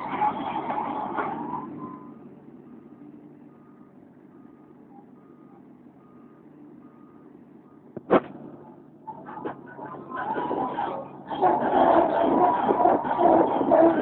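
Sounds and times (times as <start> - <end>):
excavator reversing alarm beeping: 0.0 - 10.7
excavator engine drone: 0.0 - 14.0.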